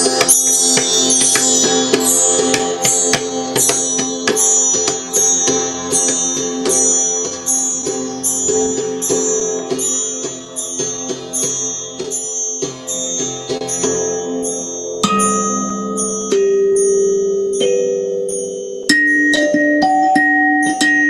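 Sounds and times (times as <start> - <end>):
kalimba plucked notes: 15.0 - 21.0.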